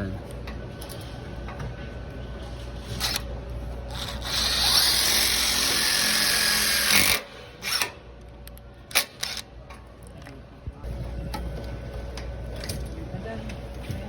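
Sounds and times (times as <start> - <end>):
impact drill driving screw: 3.9 - 7.9.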